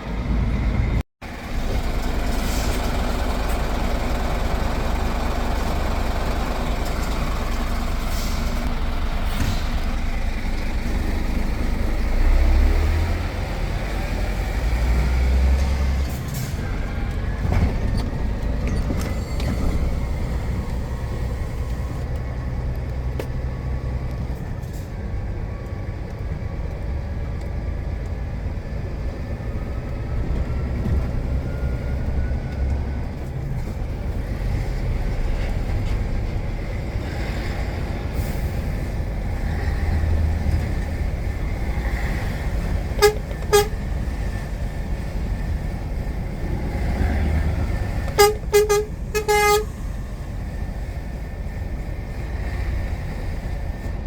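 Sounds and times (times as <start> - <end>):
truck engine rumbling: 0.0 - 54.0
horn toots: 42.9 - 43.8, 48.1 - 49.8.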